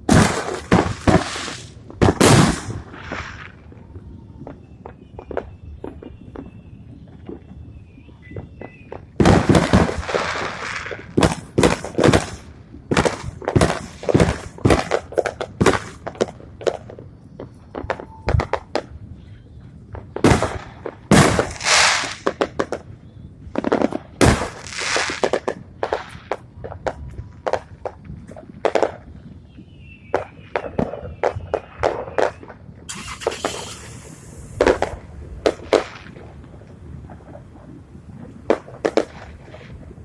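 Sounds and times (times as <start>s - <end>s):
fireworks bangs: 0.0s - 40.0s
fireworks crackling hiss: 0.0s - 40.0s.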